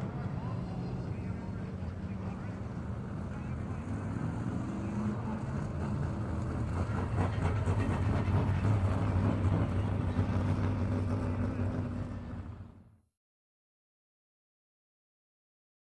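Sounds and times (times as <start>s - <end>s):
car engine humming: 0.0s - 12.9s.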